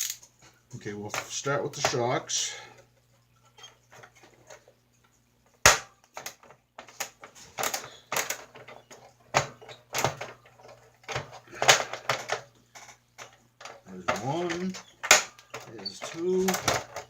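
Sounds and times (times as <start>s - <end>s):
plastic toy parts clicking: 0.0s - 0.2s.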